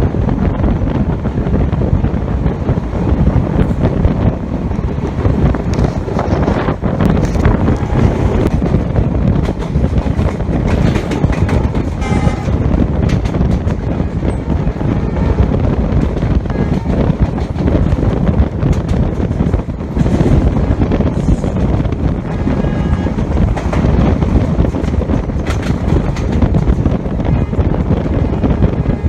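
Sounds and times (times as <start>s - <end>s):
train rumbling and clattering: 0.0s - 29.0s
wind buffeting microphone: 0.0s - 29.0s
locomotive horn blast: 12.0s - 12.9s, 22.2s - 23.4s.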